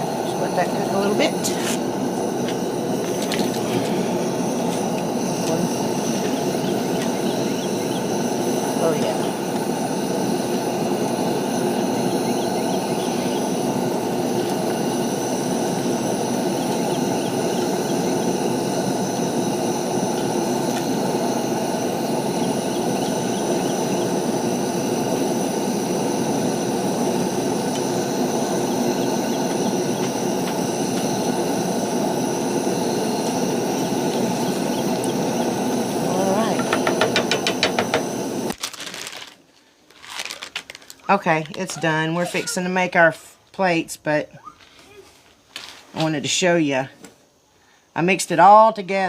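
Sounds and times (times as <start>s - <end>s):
food sizzling in pans: 0.0s - 38.5s.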